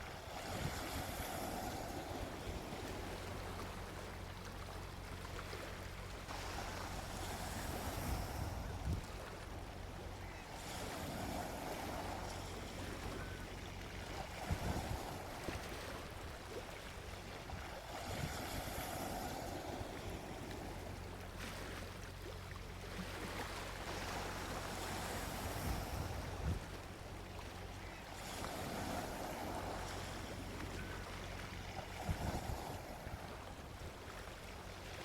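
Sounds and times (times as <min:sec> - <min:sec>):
low steady rumble: 0:00.0 - 0:35.0
sea waves washing onto beach: 0:00.0 - 0:35.0.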